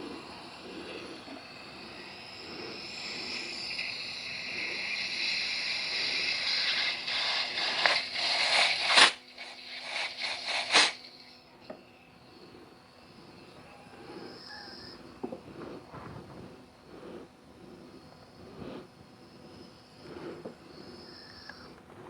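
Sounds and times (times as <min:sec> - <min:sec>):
short sharp air blasts: 0:00.0 - 0:11.3
compressed air hissing: 0:00.0 - 0:11.6, 0:12.2 - 0:22.0.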